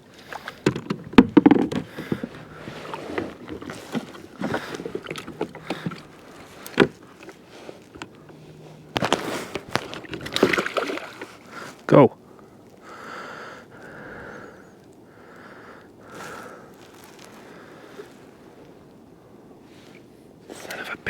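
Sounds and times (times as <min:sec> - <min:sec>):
fishing gear knocking on kayak: 0:00.4 - 0:07.3.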